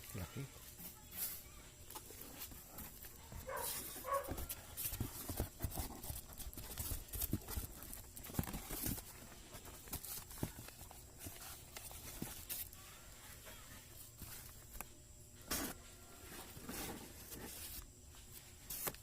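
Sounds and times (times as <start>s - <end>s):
packaging rustling: 2.2s - 12.8s.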